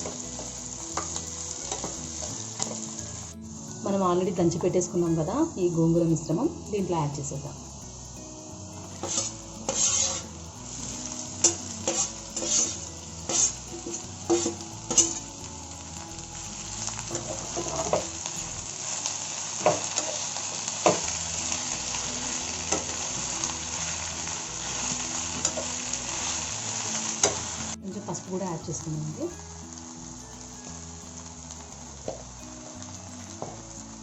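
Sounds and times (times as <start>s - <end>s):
paste sizzling in hot oil: 0.0s - 34.0s
spoon scraping pan: 8.8s - 10.3s, 11.4s - 15.2s.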